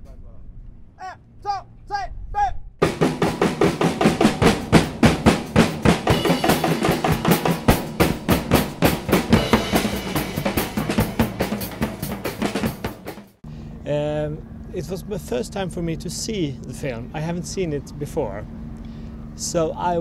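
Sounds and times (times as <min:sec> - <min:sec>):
rapid drumming on snare and bass: 0:02.8 - 0:13.4.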